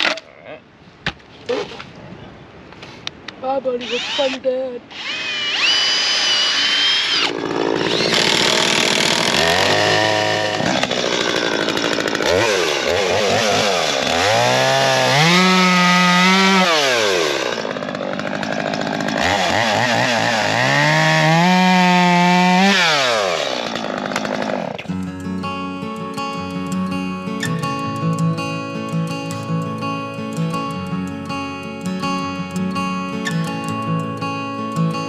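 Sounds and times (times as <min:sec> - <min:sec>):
chainsaw engine revving: 0:03.8 - 0:24.9.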